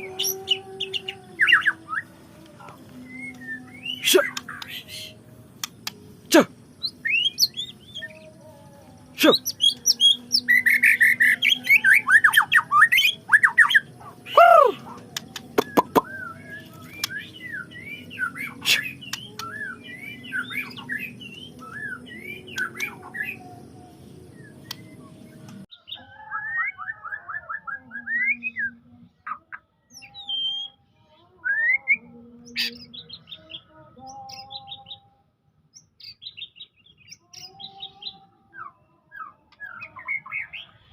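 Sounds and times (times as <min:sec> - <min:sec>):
steady background hum: 0:00.0 - 0:25.7
songbird singing whistled notes: 0:00.0 - 0:35.1, 0:35.7 - 0:40.9.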